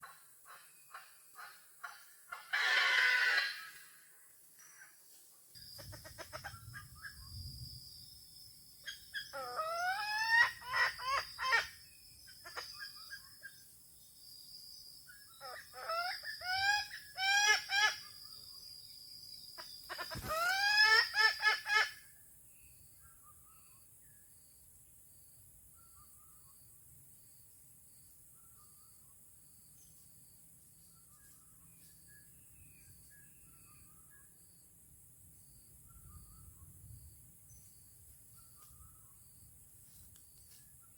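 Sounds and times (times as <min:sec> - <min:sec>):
faint chirps and ticks: 0:22.1 - 0:40.9.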